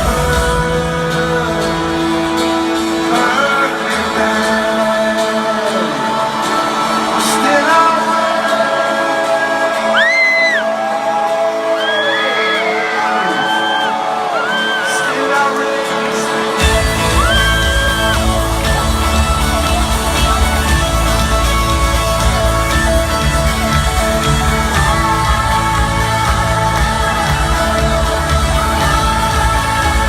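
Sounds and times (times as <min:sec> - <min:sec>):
live rock band: 0:00.0 - 0:30.0
crowd shouting: 0:04.2 - 0:30.0
heavy drums and bass: 0:16.6 - 0:30.0.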